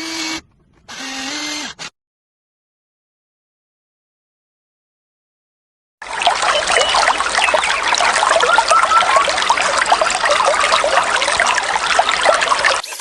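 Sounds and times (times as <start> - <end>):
water trickling and bubbling: 6.0 - 13.0.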